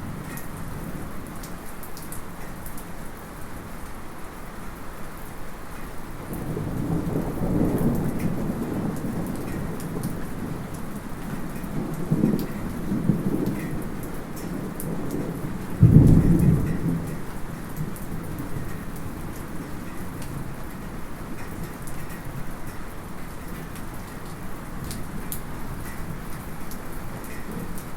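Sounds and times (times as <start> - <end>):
light steady rain: 0.0 - 27.9
distant thunder rumbling: 11.3 - 19.8.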